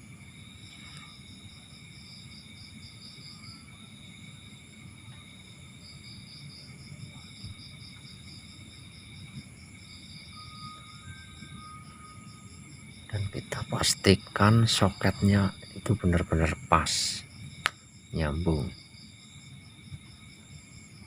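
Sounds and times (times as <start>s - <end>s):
insects chirping: 0.0s - 21.0s.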